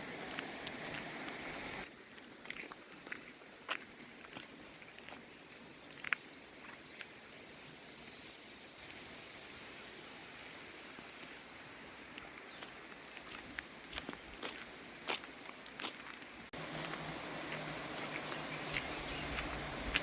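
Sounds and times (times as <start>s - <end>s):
faint outdoor ambience: 0.0s - 20.0s.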